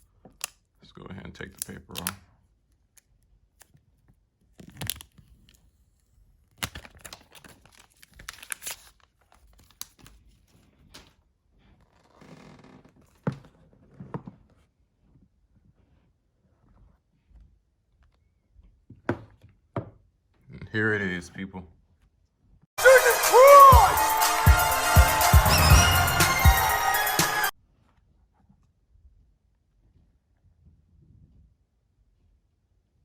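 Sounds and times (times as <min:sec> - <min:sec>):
paper tearing and crinkling: 0:06.5 - 0:10.6.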